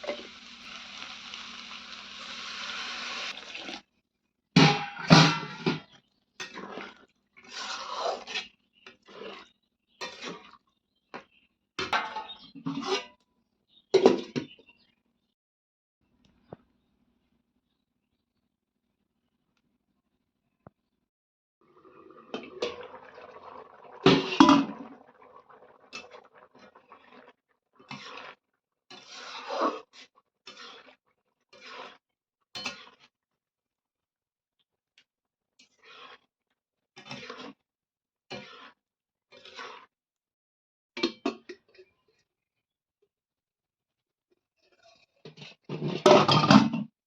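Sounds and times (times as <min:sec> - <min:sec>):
scraping or stirring in pot: 0:00.0 - 0:03.8, 0:06.4 - 0:10.6, 0:21.7 - 0:32.0, 0:35.6 - 0:36.3, 0:37.0 - 0:37.6, 0:38.3 - 0:40.0
metal spoon scraping cooking pot: 0:06.5 - 0:10.5, 0:27.9 - 0:32.0, 0:38.3 - 0:39.9
liquid splashing into metal pot: 0:21.6 - 0:27.3.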